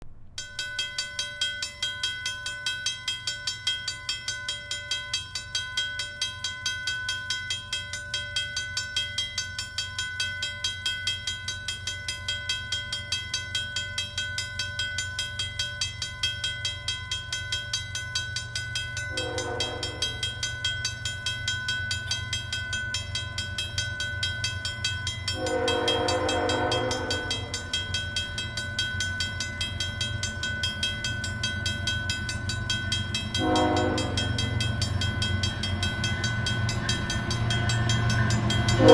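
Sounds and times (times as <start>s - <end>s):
level-crossing bell ringing: 8.5s - 38.9s
diesel locomotives rumbling: 19.0s - 38.9s
locomotive horn blasts: 19.1s - 20.2s, 25.4s - 27.6s, 33.4s - 34.5s.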